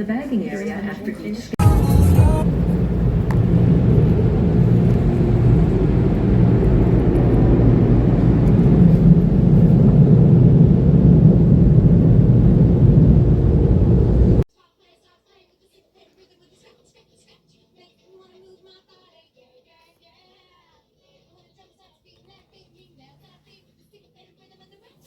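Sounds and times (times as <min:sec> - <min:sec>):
vehicle rumbling: 0:01.6 - 0:14.4.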